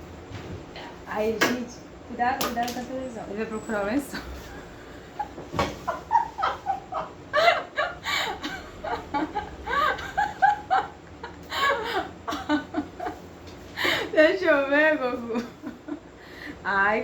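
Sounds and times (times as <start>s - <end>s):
people giggling and chuckling: 4.2s - 14.0s.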